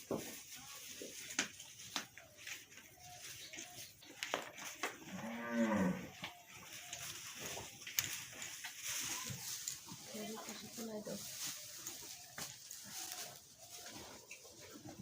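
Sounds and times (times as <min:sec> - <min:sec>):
cow mooing: 0:05.1 - 0:06.2.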